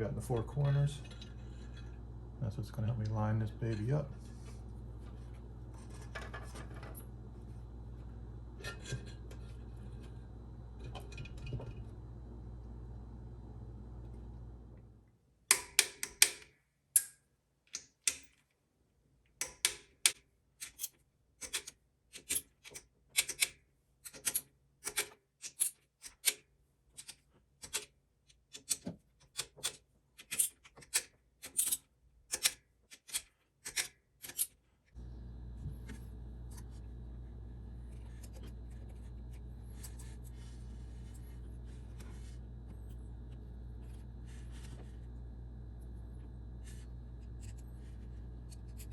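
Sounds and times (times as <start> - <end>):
steady low hum: 0.0 - 15.0, 35.0 - 48.9.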